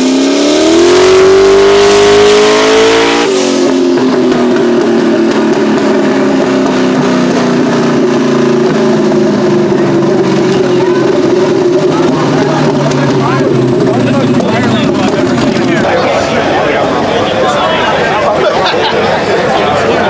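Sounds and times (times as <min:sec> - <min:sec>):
car engine revving on a dyno: 0:00.0 - 0:15.9.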